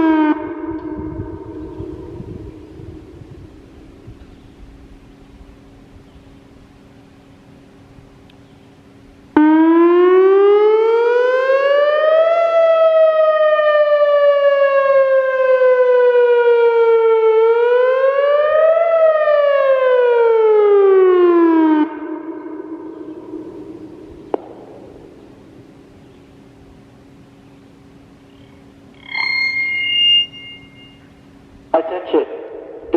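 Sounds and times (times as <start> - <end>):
warning siren wailing: 0.0 - 4.2, 9.4 - 24.2, 28.9 - 31.4.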